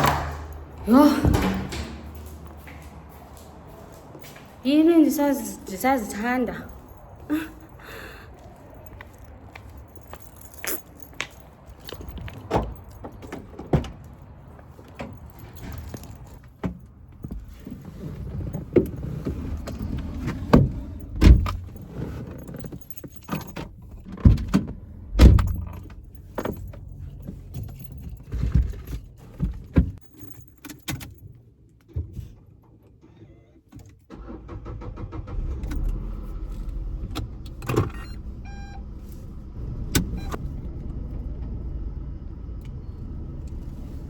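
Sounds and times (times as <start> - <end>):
sharp knocks and clunks: 0.0 - 2.2
keys jangling: 0.0 - 4.5, 5.8 - 29.0, 30.0 - 31.4.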